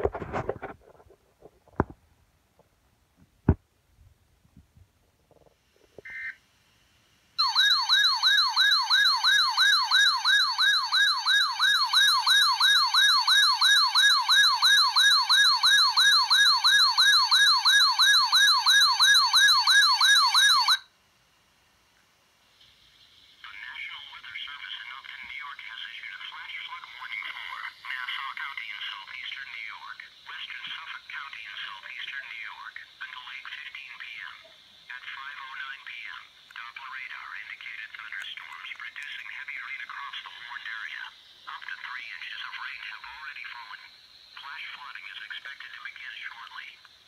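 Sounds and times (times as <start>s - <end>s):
electronic siren yelping: 7.4s - 20.9s.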